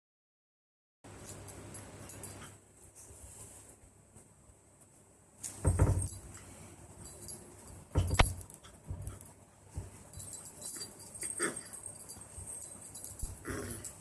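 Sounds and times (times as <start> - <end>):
dull thumps: 5.6 - 6.2, 7.9 - 9.1
keys jangling: 7.0 - 9.3, 9.9 - 14.0.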